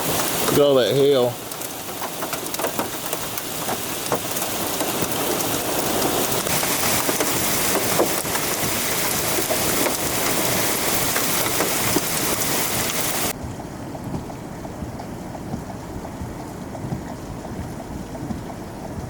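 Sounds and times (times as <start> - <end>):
hailstones clattering: 0.0 - 13.3.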